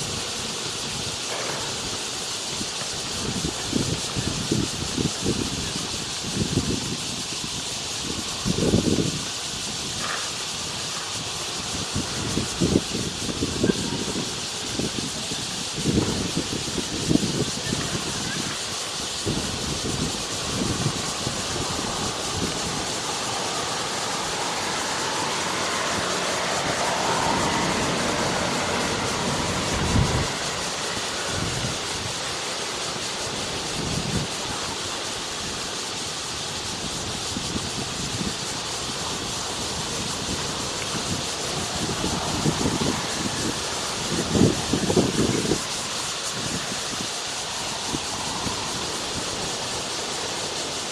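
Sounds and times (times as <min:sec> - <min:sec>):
outdoor hiss: 0:00.0 - 0:50.9
wind buffeting microphone: 0:00.0 - 0:50.9.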